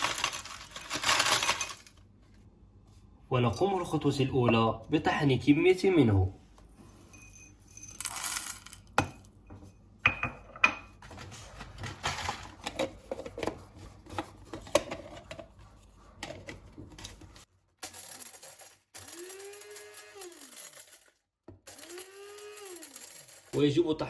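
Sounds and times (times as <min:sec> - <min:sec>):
cloves clicking and rattling: 0:00.0 - 0:01.9
electric spice grinder whine: 0:19.0 - 0:21.0, 0:21.7 - 0:23.3.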